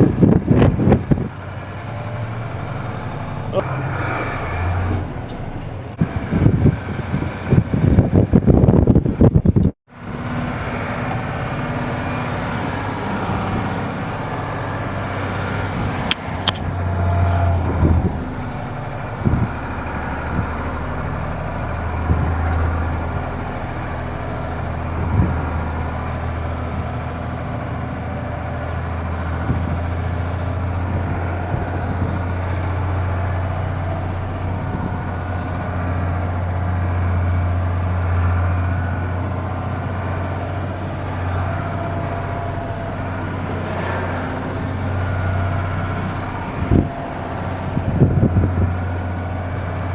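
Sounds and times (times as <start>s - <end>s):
diesel truck engine under load: 0.0s - 49.9s.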